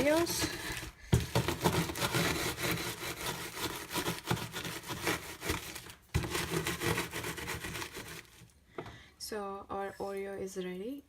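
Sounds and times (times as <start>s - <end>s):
plastic bag crinkling: 0.0s - 2.3s
rolling pin crushing cookies: 0.0s - 8.6s.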